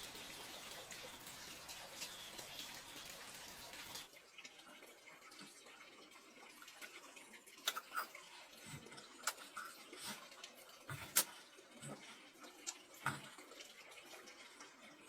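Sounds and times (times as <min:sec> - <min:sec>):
running water rushing: 0:00.0 - 0:15.0.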